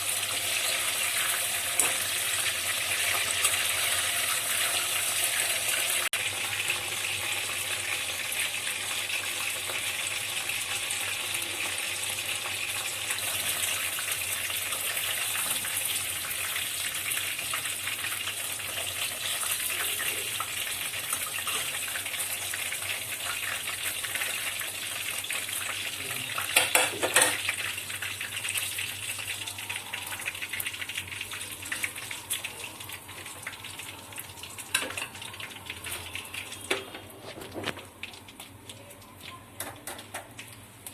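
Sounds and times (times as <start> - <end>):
food sizzling in oil: 0.0 - 40.9
utensil clattering against pan: 26.5 - 27.4.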